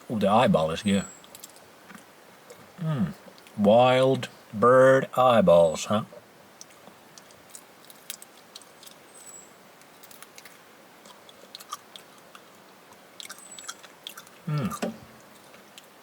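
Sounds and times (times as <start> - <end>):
person chewing raw meat: 9.9 - 15.9.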